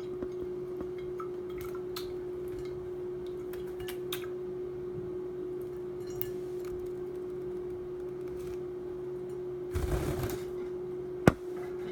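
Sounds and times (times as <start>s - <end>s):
steady hum: 0.0s - 11.9s.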